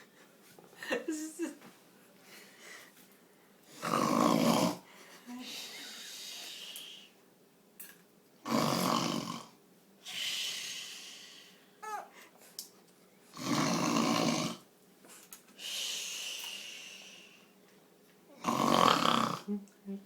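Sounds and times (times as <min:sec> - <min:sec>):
person snoring: 0:03.7 - 0:04.9, 0:08.5 - 0:11.5, 0:13.4 - 0:14.6, 0:18.4 - 0:19.6
breathy exhale: 0:10.1 - 0:12.3, 0:15.6 - 0:17.5.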